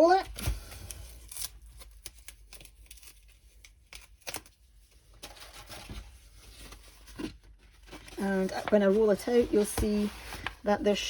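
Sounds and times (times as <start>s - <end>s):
canvas and wrapping rustling: 6.3s - 11.0s.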